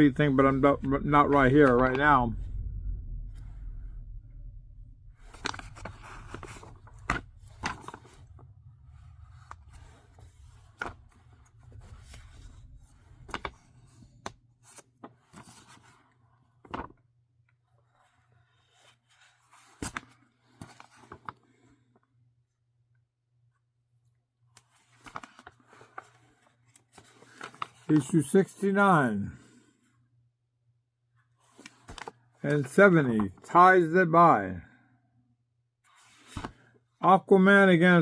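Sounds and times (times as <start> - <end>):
low steady hum: 0.0 - 14.6
comic books rustling: 5.2 - 22.0, 24.4 - 30.0, 31.2 - 34.2, 35.8 - 38.0.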